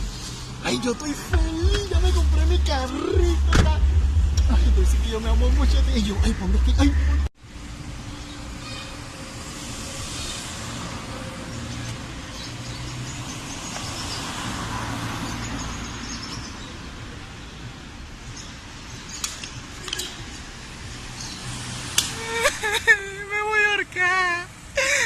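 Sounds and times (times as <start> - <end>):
car engine hum: 0.0 - 15.9
road noise: 0.0 - 25.0.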